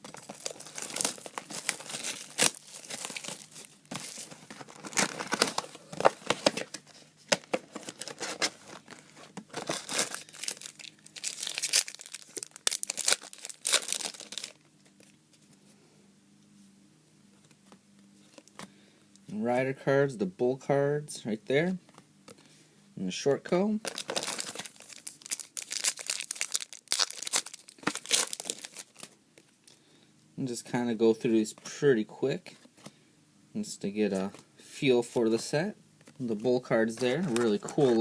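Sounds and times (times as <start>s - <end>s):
wrappers crinkling and tearing: 0.0s - 6.7s, 7.4s - 15.1s, 23.8s - 29.2s.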